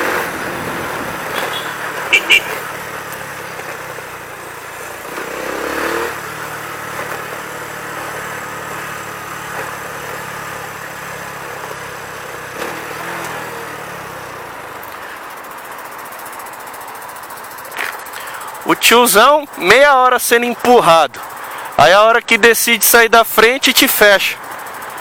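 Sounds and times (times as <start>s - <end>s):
motorcycle engine running: 0.0s - 25.0s
wind and road noise: 0.0s - 25.0s.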